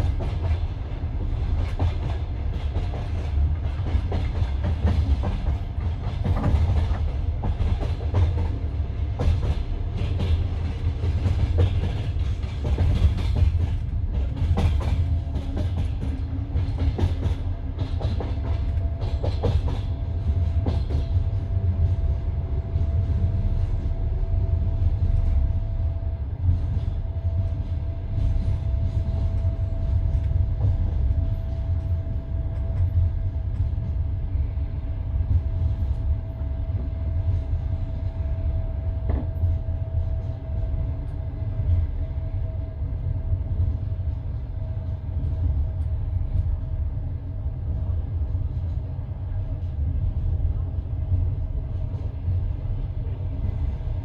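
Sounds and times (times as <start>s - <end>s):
clacks over rail joints: 0.0s - 22.0s
train wheels rumbling on rail: 0.0s - 54.0s.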